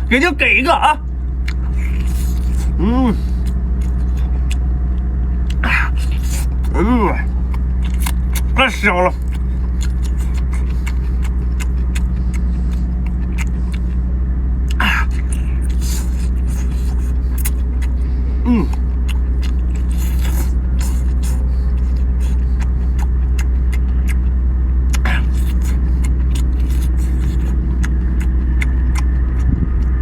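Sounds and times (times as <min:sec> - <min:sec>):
low engine drone: 0:00.0 - 0:30.0
person eating crunchy seafood: 0:00.0 - 0:30.0
short vocal sounds: 0:02.7 - 0:03.3, 0:18.4 - 0:18.8.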